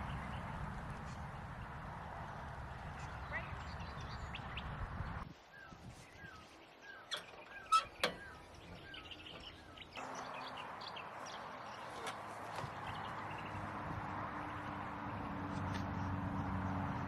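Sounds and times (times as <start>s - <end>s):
bird chirping: 2.9s - 13.7s.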